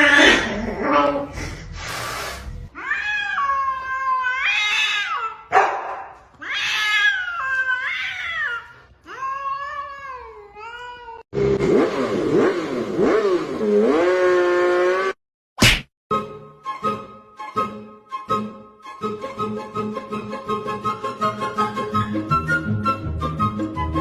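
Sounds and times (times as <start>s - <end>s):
cat yowling: 0.0s - 1.3s, 2.8s - 5.6s, 6.4s - 11.2s.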